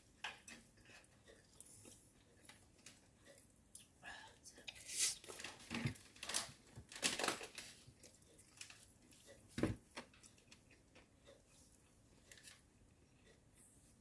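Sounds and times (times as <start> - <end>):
chewing and biting: 7.4 - 9.4, 10.0 - 13.7.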